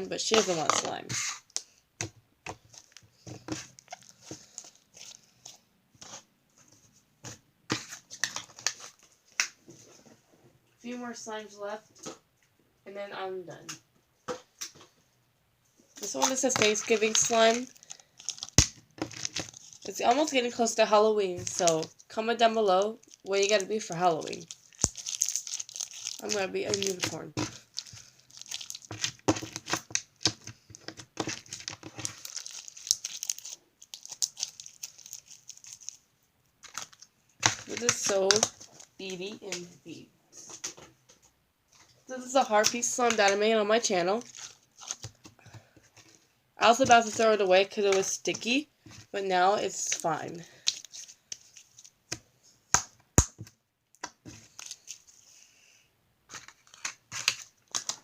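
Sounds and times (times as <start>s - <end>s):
slime crackling and popping: 16.0s - 20.2s, 22.9s - 30.4s, 31.2s - 36.0s
slime squishing and popping: 18.2s - 19.7s, 24.4s - 30.4s.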